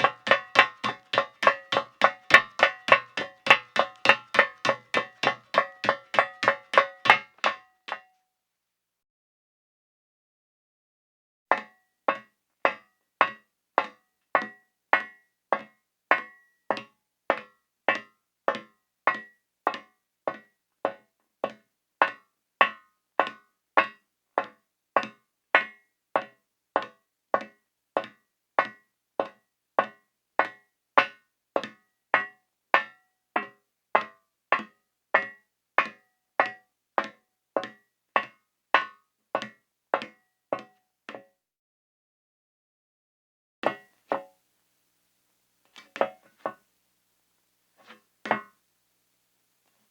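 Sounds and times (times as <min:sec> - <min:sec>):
high heels on metal floor: 0:00.0 - 0:07.6.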